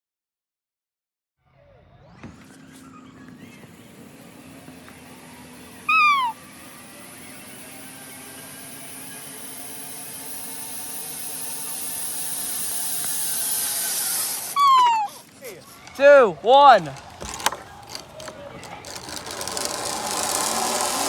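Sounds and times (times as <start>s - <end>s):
high falling cry: 5.8s - 6.5s, 14.3s - 18.0s.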